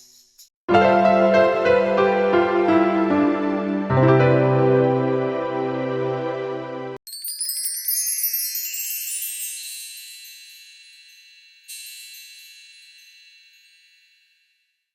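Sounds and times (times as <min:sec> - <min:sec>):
background music: 0:00.7 - 0:07.0
shimmering chime: 0:07.1 - 0:14.8.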